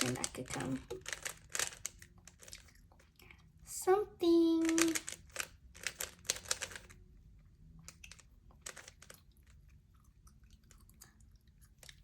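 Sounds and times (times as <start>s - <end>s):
plastic puzzle cube clacking: 0.0s - 2.7s, 4.6s - 7.0s, 7.9s - 9.1s.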